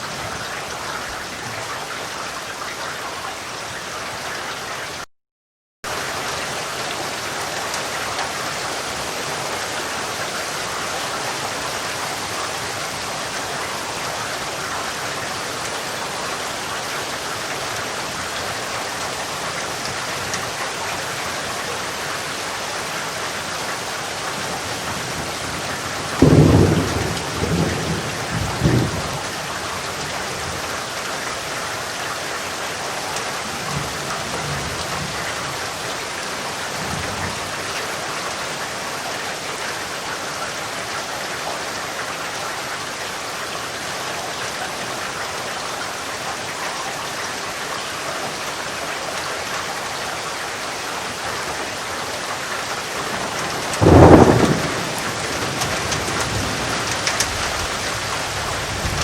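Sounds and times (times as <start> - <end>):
heavy rain: 0.0 - 5.1, 5.9 - 59.0
thunder crack and rumble: 24.4 - 30.7, 52.9 - 59.0.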